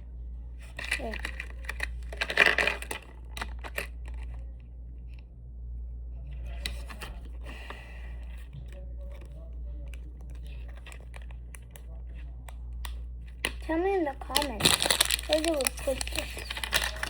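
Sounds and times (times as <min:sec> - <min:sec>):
steady low hum: 0:00.0 - 0:17.0
packaging rustling: 0:14.0 - 0:17.0.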